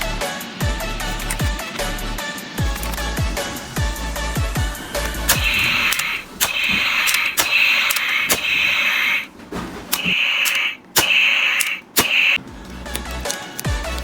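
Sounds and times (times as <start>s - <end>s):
toy clicks: 0.8s - 1.7s, 5.0s - 9.3s, 10.0s - 14.0s
electronic gunfire sound effect: 5.3s - 9.3s, 10.0s - 12.4s.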